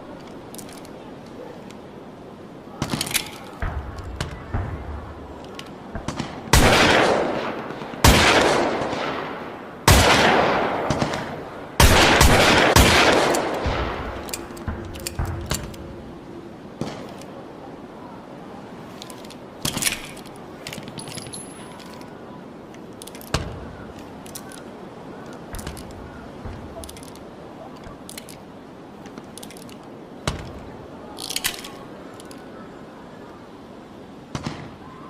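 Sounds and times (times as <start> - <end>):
revolver metallic clicks: 13.1 - 16.0.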